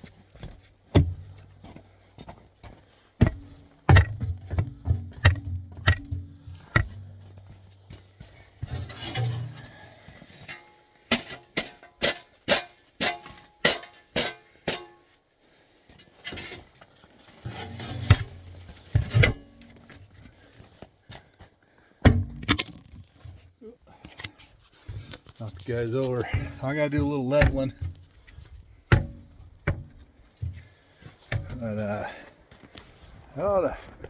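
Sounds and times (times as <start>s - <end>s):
footsteps on metal stairs: 0.0s - 15.1s, 17.5s - 22.6s, 24.8s - 31.8s.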